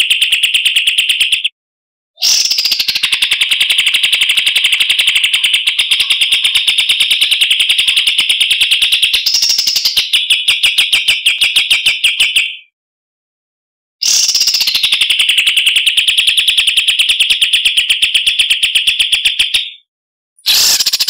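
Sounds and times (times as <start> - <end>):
songbird trilling: 2.2 - 10.5.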